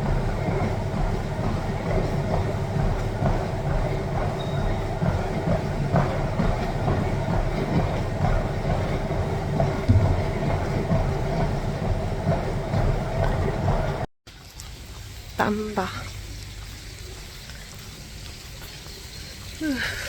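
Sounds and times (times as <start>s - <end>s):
treadmill motor whine: 0.0s - 14.1s
treadmill rumbling clatter: 0.0s - 14.1s.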